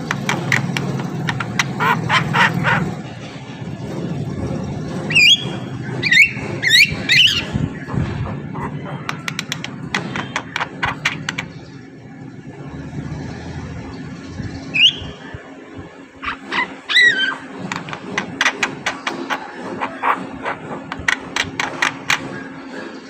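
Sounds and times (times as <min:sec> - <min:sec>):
myna clicking chatter: 0:08.3 - 0:11.6.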